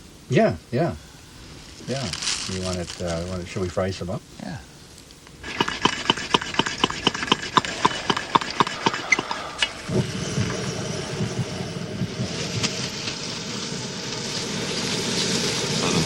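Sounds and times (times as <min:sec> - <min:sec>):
rapid metallic ticking: 0:05.2 - 0:12.4
camp stove rushing: 0:05.3 - 0:16.0.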